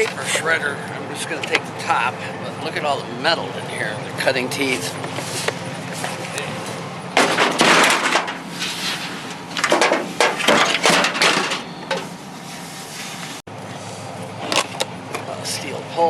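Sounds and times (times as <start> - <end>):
junk clattering and knocking: 4.9 - 12.2.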